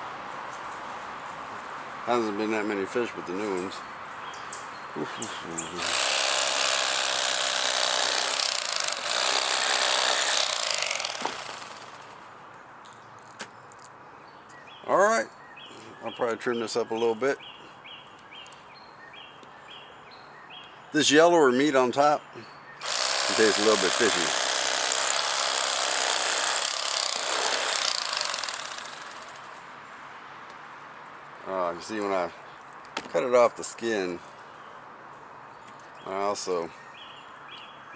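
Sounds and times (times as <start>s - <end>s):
electric fillet knife buzzing: 5.8s - 12.0s, 22.8s - 29.4s.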